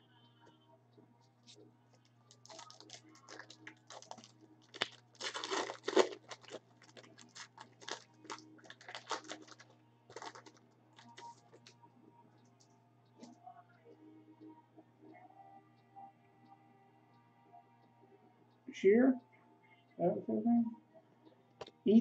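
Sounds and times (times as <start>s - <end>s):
cards clicking and rustling: 2.3s - 11.7s
wrapper crinkling and tearing: 2.3s - 11.7s.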